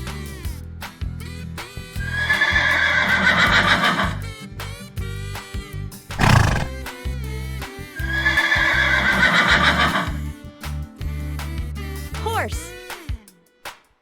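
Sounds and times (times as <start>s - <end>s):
horse neighing: 6.2s - 6.7s.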